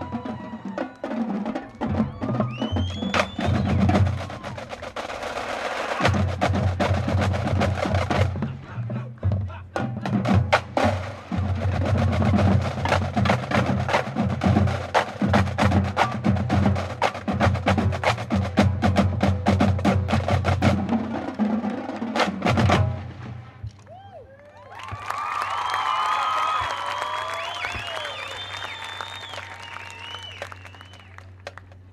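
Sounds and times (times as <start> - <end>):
marching drumline playing: 0.0 - 23.7.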